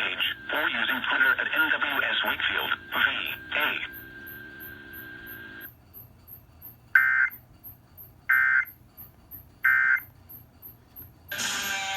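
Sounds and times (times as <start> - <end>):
digital data tone bursts: 0.0 - 5.7.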